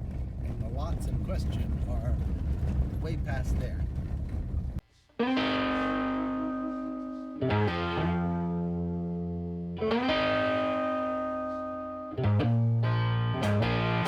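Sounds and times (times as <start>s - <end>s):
guitar chords: 5.2s - 14.0s.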